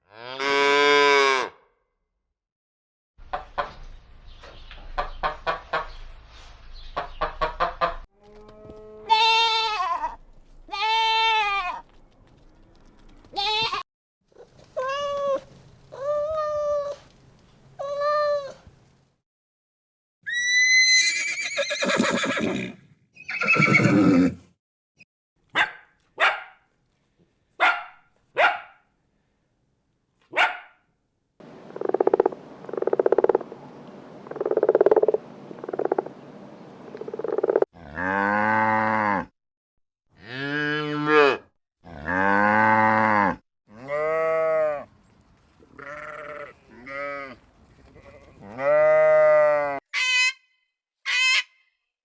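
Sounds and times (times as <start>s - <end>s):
cattle mooing: 37.8s - 39.3s.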